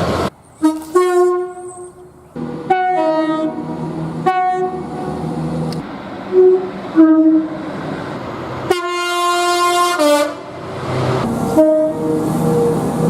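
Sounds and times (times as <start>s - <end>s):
train horn blasts: 0.6s - 5.0s, 6.3s - 7.6s, 8.7s - 10.5s, 11.5s - 13.0s.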